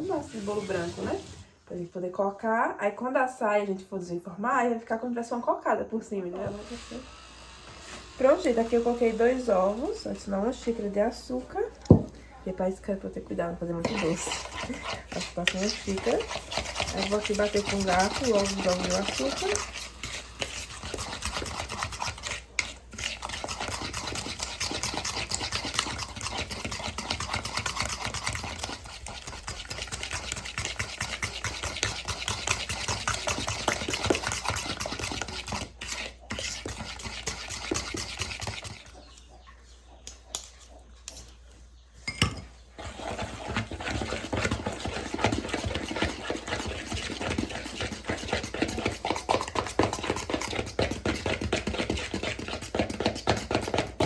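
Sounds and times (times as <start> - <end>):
fork beating eggs in bowl: 12.9 - 39.3, 42.1 - 54.0.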